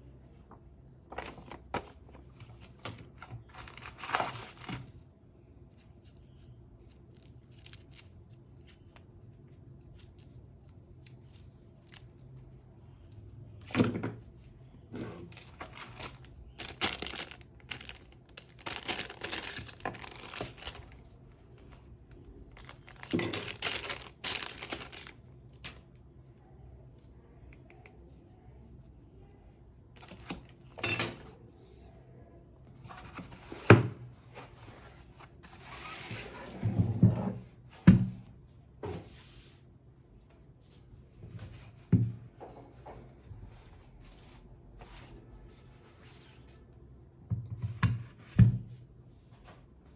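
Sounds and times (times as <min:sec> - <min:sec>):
wrapping rustling and tearing: 0:01.1 - 0:02.2, 0:03.2 - 0:04.9, 0:07.0 - 0:08.9, 0:15.2 - 0:25.8.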